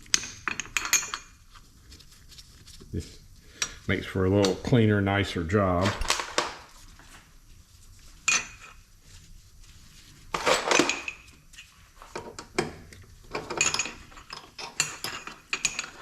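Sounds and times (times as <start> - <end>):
metal tools clanking: 12.2 - 16.0.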